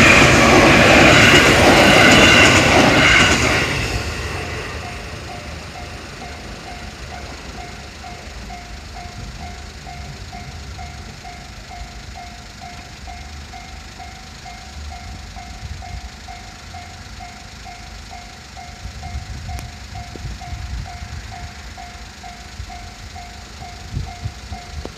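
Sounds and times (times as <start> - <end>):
low rumble: 0.0 - 24.9
railroad crossing bell ringing: 0.0 - 24.9.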